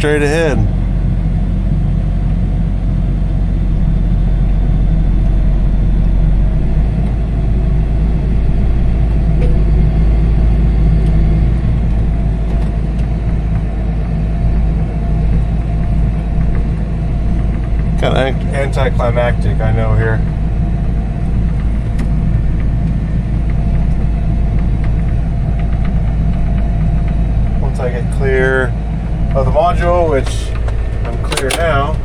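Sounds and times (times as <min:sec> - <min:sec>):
tractor diesel engine running: 0:00.0 - 0:32.0.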